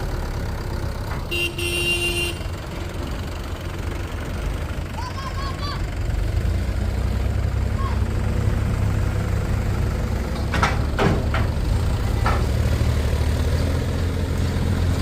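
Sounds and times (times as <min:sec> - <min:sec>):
heavy vehicle engine idling: 0:00.0 - 0:15.0
short high horn toot: 0:01.3 - 0:02.5.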